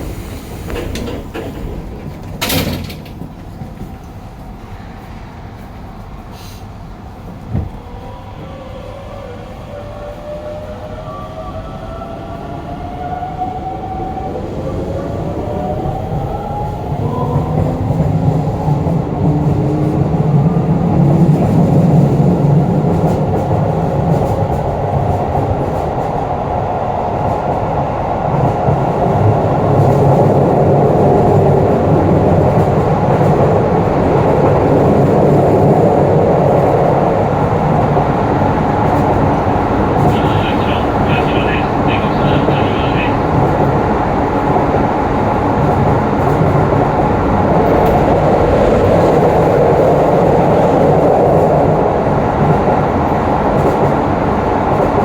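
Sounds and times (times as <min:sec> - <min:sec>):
train motors and wheels rumbling: 0:00.0 - 0:12.0, 0:28.2 - 0:55.0
rail-joint clicks: 0:00.4 - 0:04.2
electric train inverter whine: 0:39.6 - 0:44.4.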